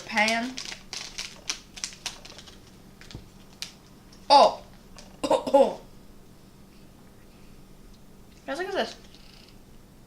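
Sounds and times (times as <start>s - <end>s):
snack package clicks: 0.1s - 3.8s.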